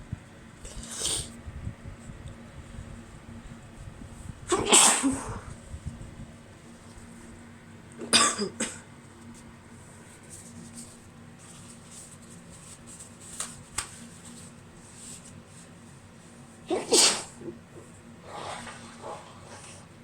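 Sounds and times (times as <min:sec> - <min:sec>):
woman's stifled sneeze: 0:04.5 - 0:05.5, 0:16.7 - 0:17.4.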